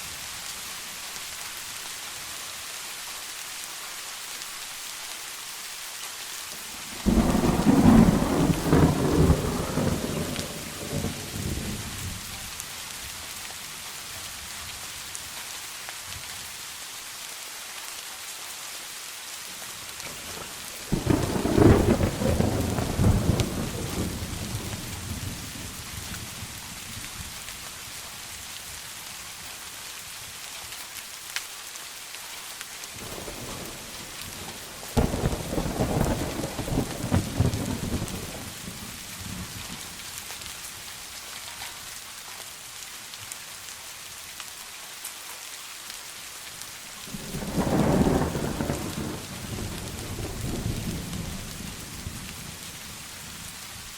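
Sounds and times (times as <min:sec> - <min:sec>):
steady rain falling: 0:00.0 - 0:53.9
thunder rumbling: 0:06.8 - 0:12.2, 0:20.1 - 0:26.6, 0:33.0 - 0:39.8, 0:47.1 - 0:53.5.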